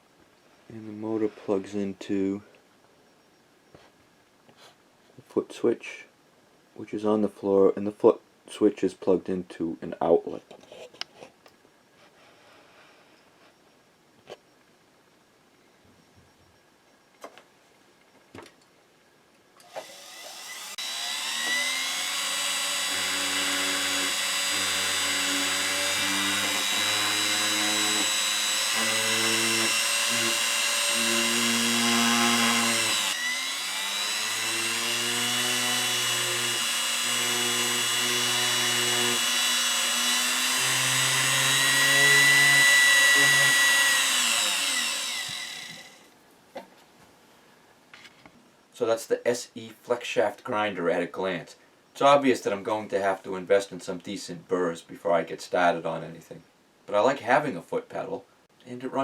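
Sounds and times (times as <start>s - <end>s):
flex shaft grinder running: 19.7s - 46.0s.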